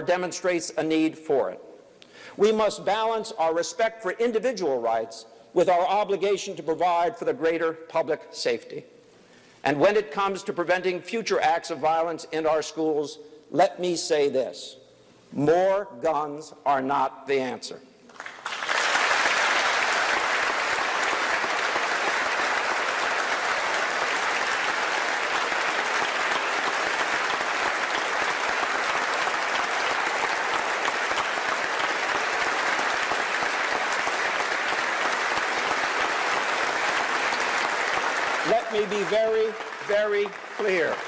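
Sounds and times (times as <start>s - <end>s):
audience applause: 18.1s - 41.0s.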